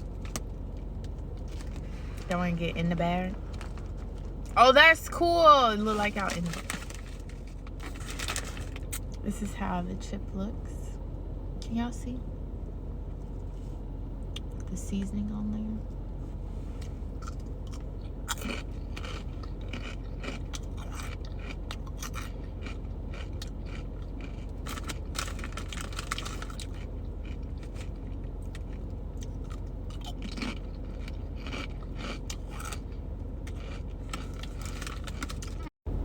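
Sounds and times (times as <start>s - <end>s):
steady low hum: 0.0s - 36.0s
potato chips crunching: 16.8s - 35.7s.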